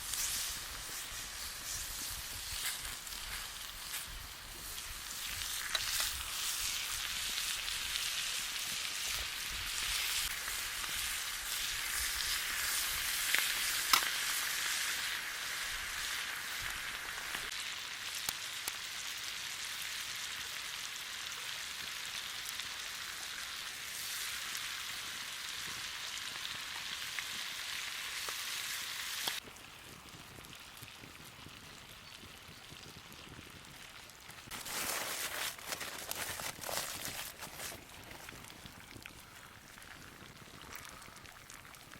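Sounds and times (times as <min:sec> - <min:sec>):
crackles and pops: 0:00.0 - 0:20.0, 0:21.0 - 0:41.9
steak sizzling in a pan: 0:00.0 - 0:29.4.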